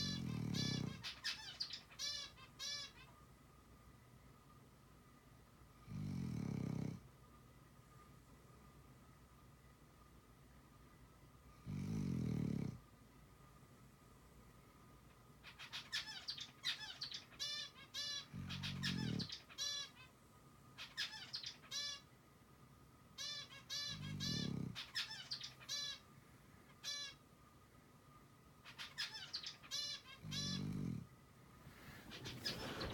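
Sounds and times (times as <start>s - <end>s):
high bird chirps: 31.9s - 32.9s.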